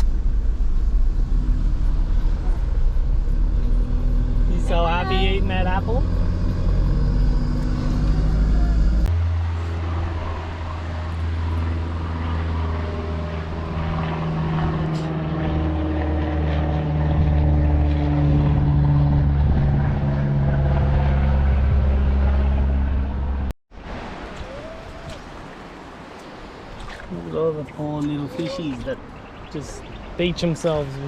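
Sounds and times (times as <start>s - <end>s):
vehicle engine droning: 0.0s - 23.5s.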